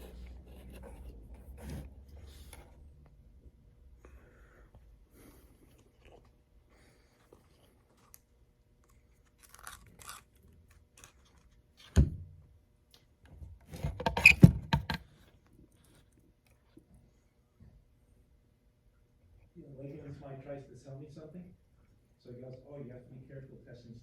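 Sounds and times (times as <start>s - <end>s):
wire strippers crunching insulation: 9.4s - 11.4s.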